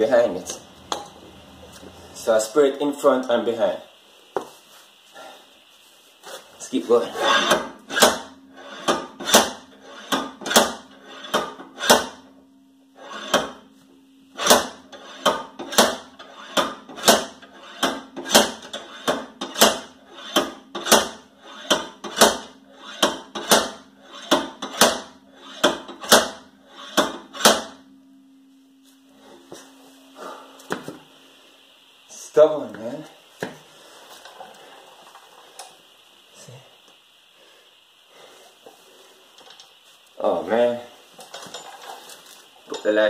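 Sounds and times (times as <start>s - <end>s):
sledgehammer hitting metal hub: 7.2s - 12.3s, 14.4s - 27.8s.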